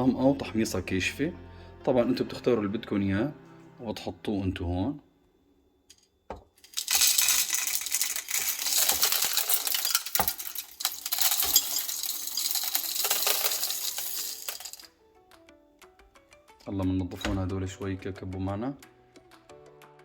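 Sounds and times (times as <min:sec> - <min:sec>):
coffee beans rattling into hopper: 0:06.6 - 0:14.9.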